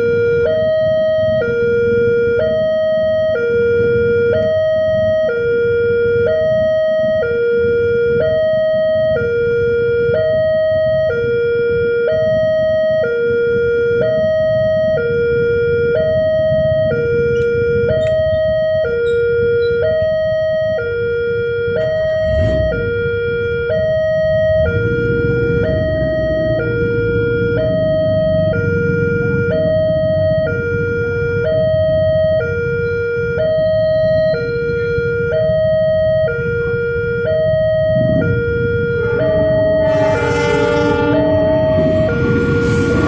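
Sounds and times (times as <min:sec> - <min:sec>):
level crossing two-tone alarm: 0:37.2 - 0:43.0
low rumble: 0:38.2 - 0:43.0.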